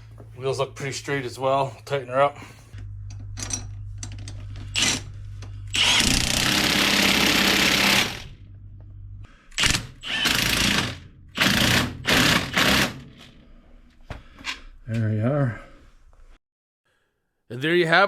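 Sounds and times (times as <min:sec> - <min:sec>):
steady low hum: 0:00.0 - 0:16.4
impact wrench: 0:04.3 - 0:08.4, 0:09.5 - 0:13.5.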